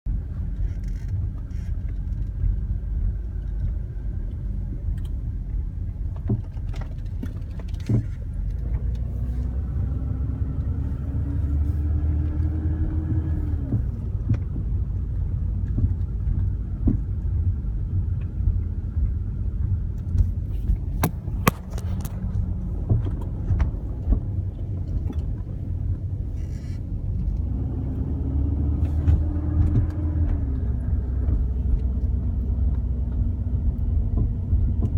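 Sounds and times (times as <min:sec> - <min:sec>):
car road and engine rumble: 0:00.0 - 0:34.9
sharp car clunks: 0:20.9 - 0:24.4.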